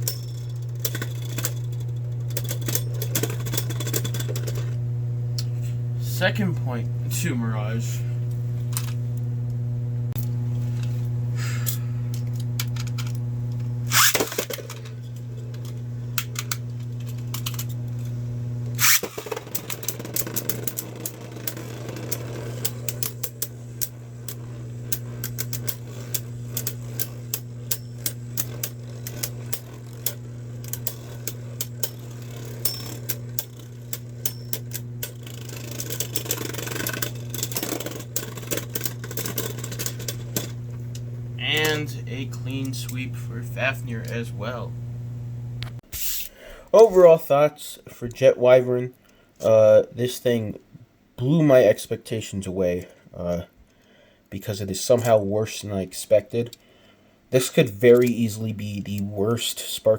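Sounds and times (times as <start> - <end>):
spinning tops launching snaps: 13.8 - 18.1, 18.7 - 40.6.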